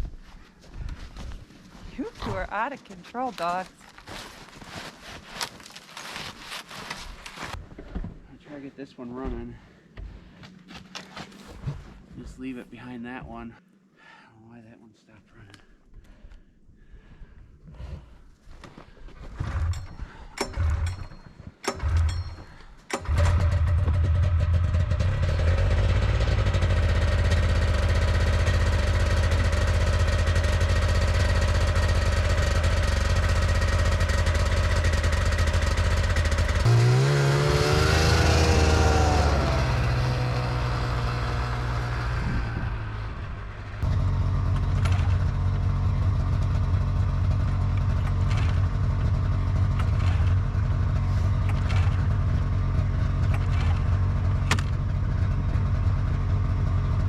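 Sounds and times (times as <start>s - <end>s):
snowmobile engine cranking and running: 18.6s - 57.0s.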